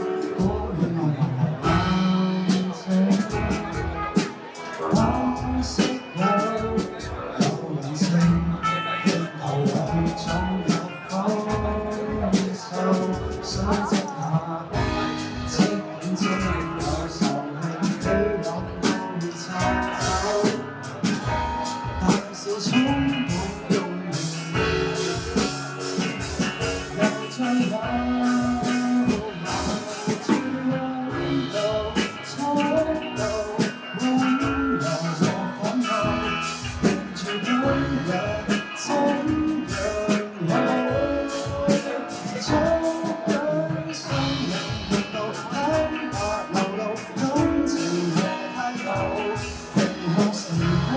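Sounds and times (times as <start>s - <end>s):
drum kit: 0.0s - 50.9s
guitar: 0.0s - 50.9s
person singing: 0.0s - 50.9s.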